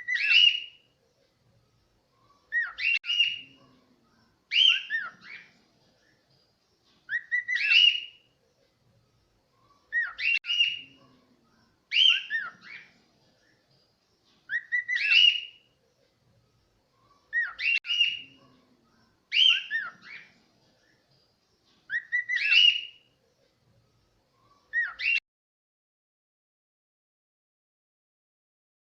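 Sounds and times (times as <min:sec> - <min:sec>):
cockatiel whistling: 0:07.1 - 0:08.1, 0:14.5 - 0:15.5, 0:21.9 - 0:23.0.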